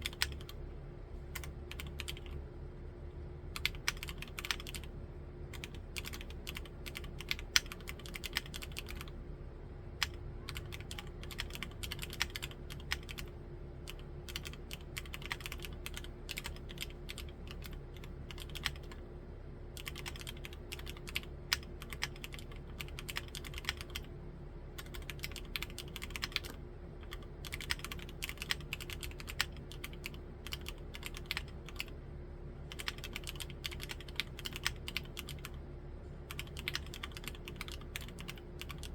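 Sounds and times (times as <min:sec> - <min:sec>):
clacky mechanical keyboard typing: 0:00.0 - 0:00.6, 0:01.3 - 0:02.4, 0:03.6 - 0:04.9, 0:05.5 - 0:09.2, 0:10.0 - 0:19.0, 0:19.7 - 0:24.1, 0:24.8 - 0:32.0, 0:32.7 - 0:35.6, 0:36.3 - 0:38.9.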